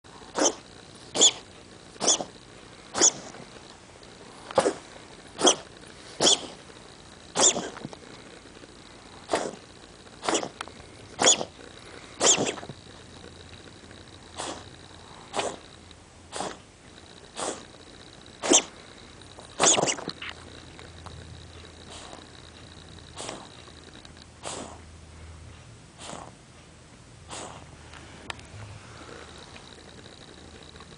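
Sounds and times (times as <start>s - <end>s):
animal coughing: 0.3s - 3.3s, 4.6s - 6.6s, 7.3s - 7.8s, 9.2s - 10.6s, 11.2s - 12.8s, 14.4s - 14.7s, 15.3s - 15.7s, 16.3s - 16.6s, 17.3s - 17.7s, 18.4s - 18.8s, 19.5s - 20.3s, 23.1s - 23.6s, 24.4s - 24.8s, 26.0s - 26.4s, 27.3s - 27.7s.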